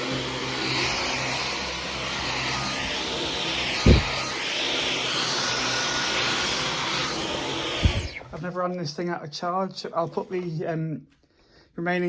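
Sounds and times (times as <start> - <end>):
vacuum cleaner motor whine: 0.0 - 8.4
dull thump: 3.8 - 4.2.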